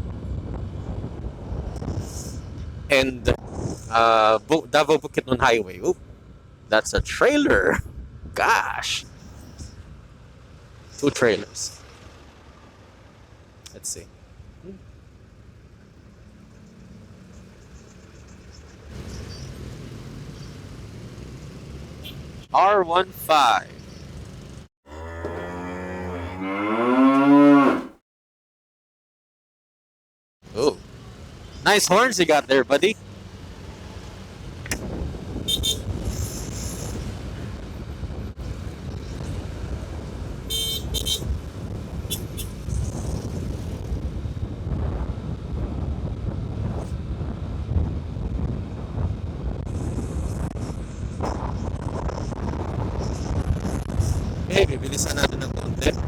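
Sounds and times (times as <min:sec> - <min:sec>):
traffic and road noise: 0:00.0 - 0:27.8, 0:30.4 - 0:56.0
high-pitched horn toots: 0:35.5 - 0:35.9, 0:40.5 - 0:41.3.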